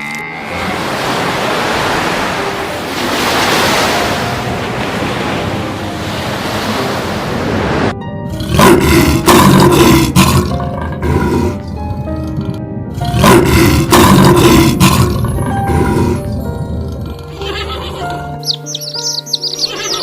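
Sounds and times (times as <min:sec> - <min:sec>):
background music: 0:00.0 - 0:20.0.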